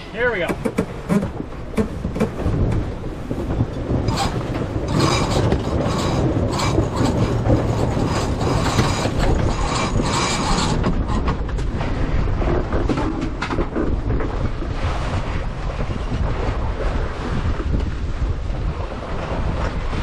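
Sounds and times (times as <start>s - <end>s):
wind and water rushing: 0.0s - 20.0s
winch ratcheting: 4.1s - 11.4s.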